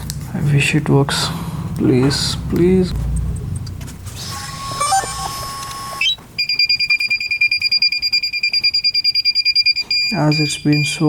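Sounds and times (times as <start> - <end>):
fast electronic beeping: 3.5 - 11.0
electronic start-up tones: 4.1 - 6.6.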